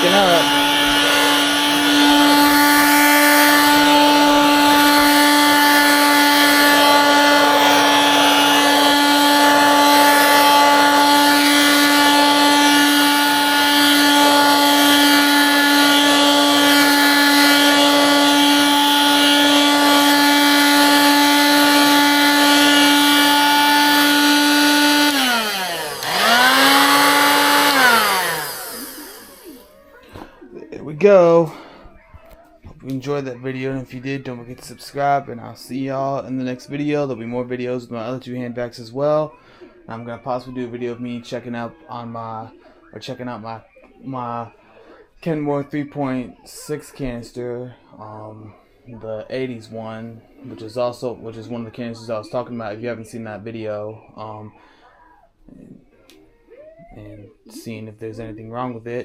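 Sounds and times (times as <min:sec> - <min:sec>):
hand vacuum motor whine: 0:00.0 - 0:30.3.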